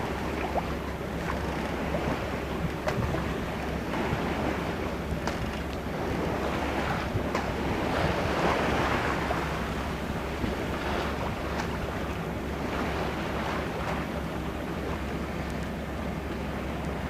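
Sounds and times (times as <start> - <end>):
steady low hum: 0.0 - 17.0
water splashing along hull: 0.0 - 17.0
wind on microphone: 1.4 - 13.9.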